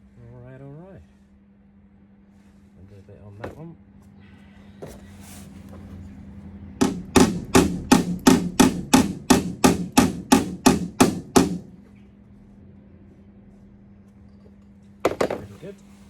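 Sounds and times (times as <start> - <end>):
hammer striking steel panel: 6.8 - 11.8.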